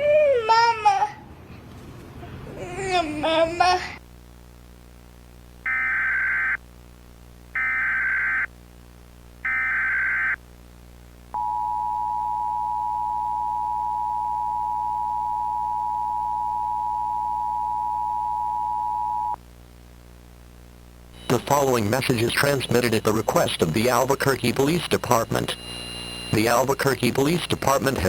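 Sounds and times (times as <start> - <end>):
harsh data bursts: 5.7 - 6.6, 7.6 - 8.5, 9.4 - 10.4, 21.2 - 28.0.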